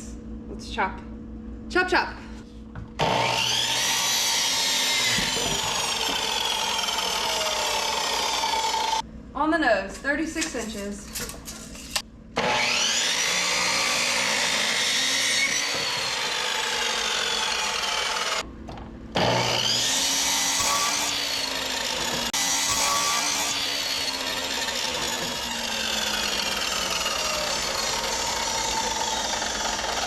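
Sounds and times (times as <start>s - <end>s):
miter saw cutting wood: 3.0s - 9.0s, 12.4s - 18.4s, 19.2s - 30.0s.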